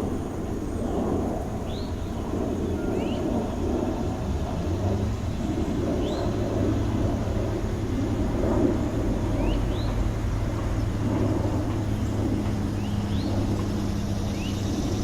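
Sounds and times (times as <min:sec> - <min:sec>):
low rumble of city traffic: 0:00.0 - 0:15.0
rising bird chirps: 0:01.7 - 0:03.3.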